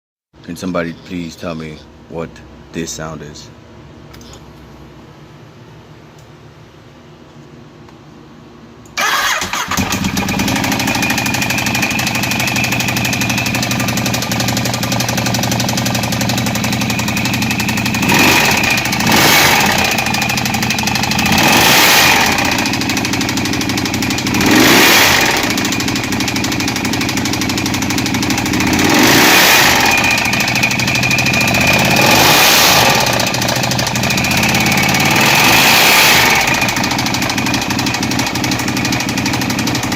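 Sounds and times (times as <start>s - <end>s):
motorcycle engine idling and revving: 9.0s - 39.9s
engine knocking: 9.8s - 39.9s.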